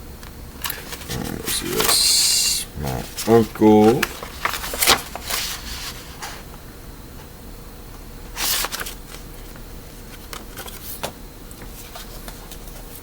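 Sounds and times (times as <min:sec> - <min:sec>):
papers rustling: 0:00.7 - 0:06.4, 0:08.4 - 0:12.9.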